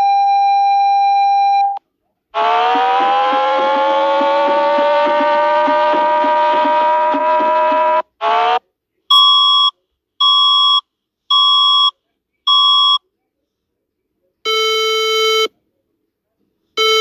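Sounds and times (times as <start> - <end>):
rising alarm sweep: 2.4 - 8.0
electronic alarm beeps: 9.1 - 13.0.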